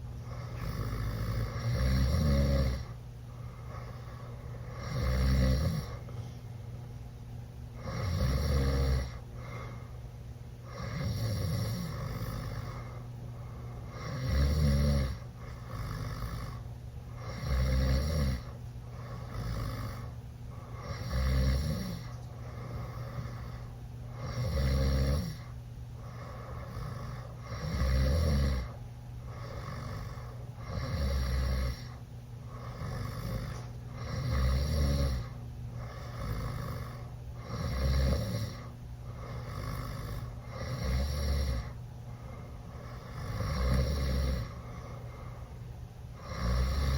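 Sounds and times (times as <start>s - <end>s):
boy snoring loudly: 0.3s - 3.0s, 4.6s - 6.0s, 7.8s - 9.2s, 10.7s - 12.9s, 13.9s - 16.6s, 17.2s - 18.5s, 19.1s - 20.1s, 20.8s - 22.2s, 24.2s - 25.5s, 26.2s - 32.0s, 32.6s - 41.8s, 42.8s - 44.6s, 46.2s - 46.9s.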